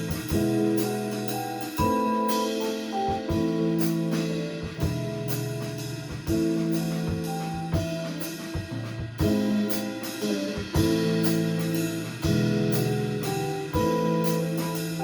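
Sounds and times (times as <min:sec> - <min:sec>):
drum kit hits: 0:00.0 - 0:15.0.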